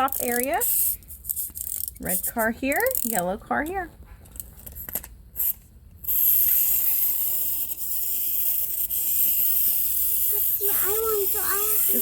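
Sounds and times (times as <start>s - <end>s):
toy spring motors whirring: 0.0s - 3.4s, 4.6s - 12.0s
wind-up toy clicks: 6.1s - 12.0s.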